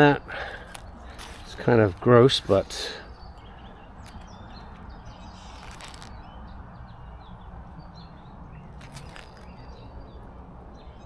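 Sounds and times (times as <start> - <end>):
small birds chirping: 0.0 - 11.0
rustling: 0.7 - 2.6, 4.0 - 6.2, 8.7 - 9.7.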